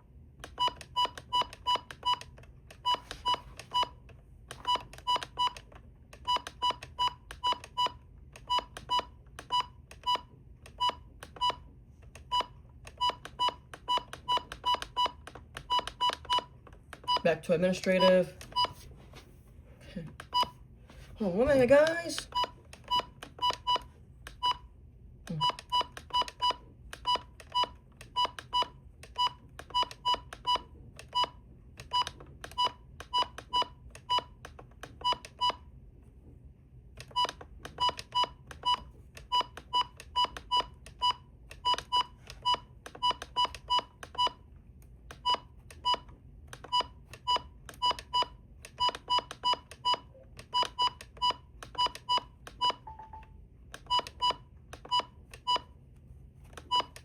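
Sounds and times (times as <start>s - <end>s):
short electronic beeps: 50.6s - 55.7s.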